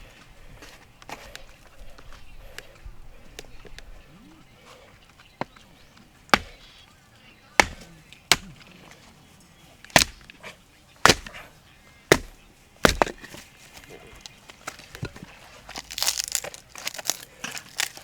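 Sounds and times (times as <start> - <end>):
blade striking wood: 6.3 - 6.7, 7.6 - 8.7, 9.8 - 10.4, 11.0 - 11.5, 12.1 - 13.4.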